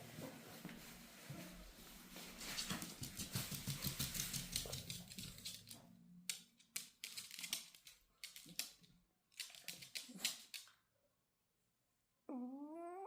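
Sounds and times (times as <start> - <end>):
small dog snoring: 12.3 - 13.0.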